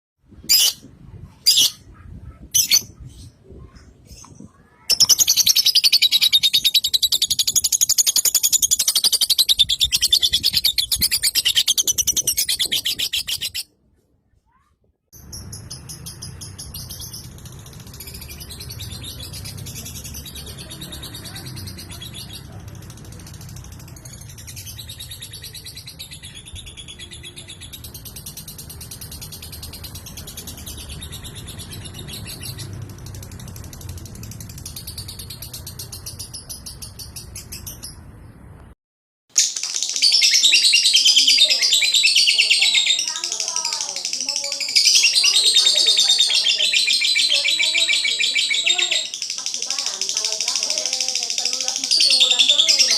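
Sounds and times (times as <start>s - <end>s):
bird chirping: 1.5s - 13.7s, 15.2s - 22.6s
bird chattering: 4.8s - 13.6s, 39.6s - 52.9s
high-pitched bird trill: 4.9s - 13.7s.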